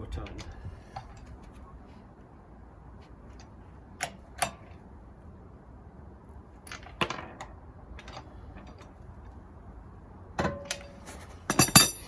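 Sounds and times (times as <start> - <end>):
wrench clinking on wheel bolts: 10.4 - 12.0.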